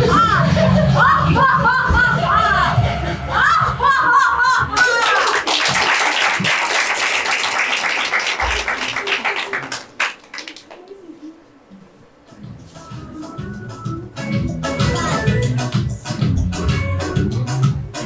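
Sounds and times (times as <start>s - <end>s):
audience applauding: 4.8s - 10.8s
person singing: 12.7s - 18.0s.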